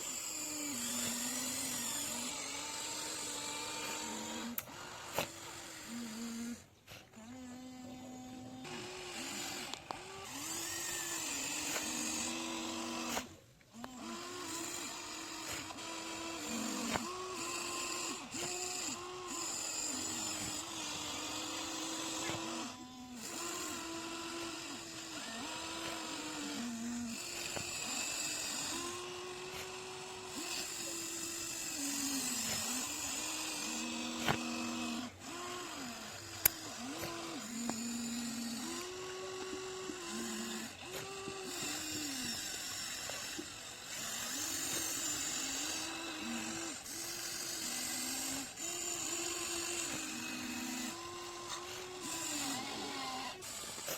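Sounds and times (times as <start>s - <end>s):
small electric motors whining: 0.0s - 53.9s
sharp clicks: 36.1s - 38.9s.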